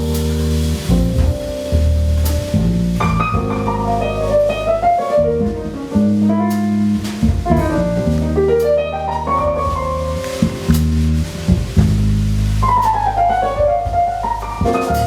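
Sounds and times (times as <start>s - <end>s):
light cymbal strokes: 0.0s - 3.1s
sustained bass notes: 0.0s - 15.0s.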